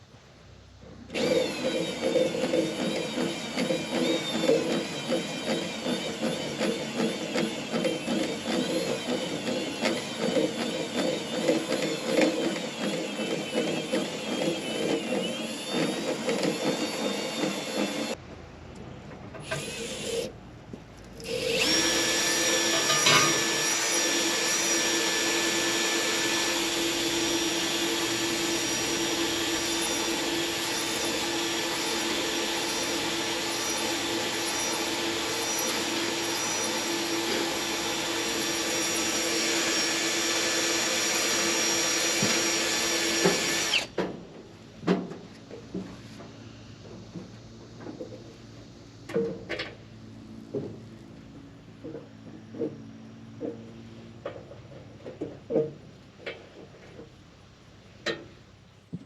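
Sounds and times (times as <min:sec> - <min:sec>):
pulsing power tool: 0:01.1 - 0:18.2, 0:21.2 - 0:44.0.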